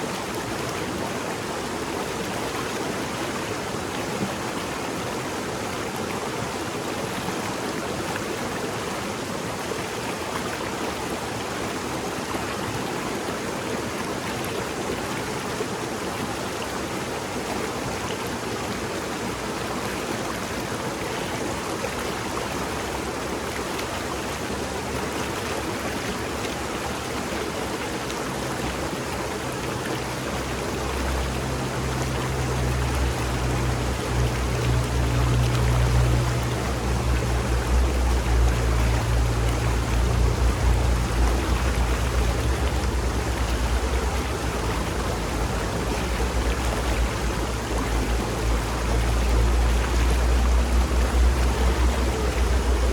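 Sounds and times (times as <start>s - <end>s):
stream babbling over rocks: 0.0s - 52.9s
low steady hum: 28.4s - 52.9s.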